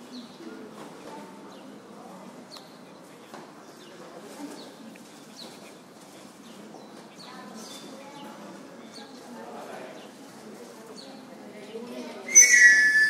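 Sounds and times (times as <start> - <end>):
murmur of distant voices: 0.0 - 13.0
high falling chirps: 12.3 - 13.0.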